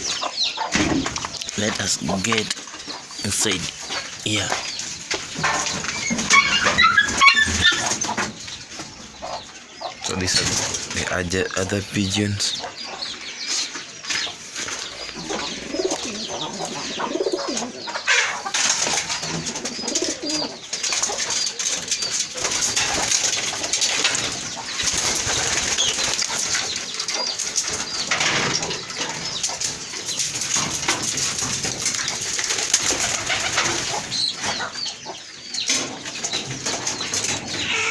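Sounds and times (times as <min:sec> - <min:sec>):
pigeons cooing: 0:00.0 - 0:37.9
wings flapping: 0:20.9 - 0:27.6, 0:30.3 - 0:34.2.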